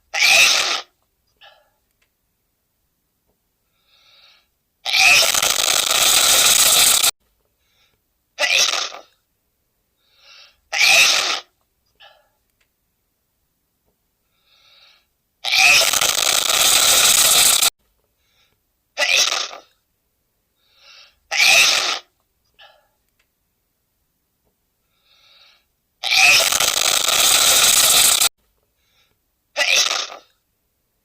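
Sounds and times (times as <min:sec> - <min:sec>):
short in-breath: 0:03.7 - 0:04.5, 0:07.6 - 0:08.0, 0:10.0 - 0:10.6, 0:14.2 - 0:15.1, 0:18.2 - 0:18.6, 0:20.6 - 0:21.2, 0:24.8 - 0:25.7, 0:28.8 - 0:29.2.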